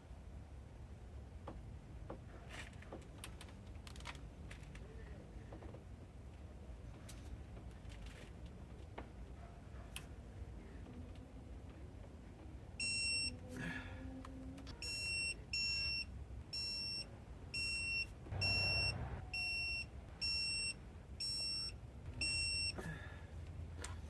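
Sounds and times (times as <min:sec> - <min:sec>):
short high electronic beeps: 0:18.3 - 0:20.6.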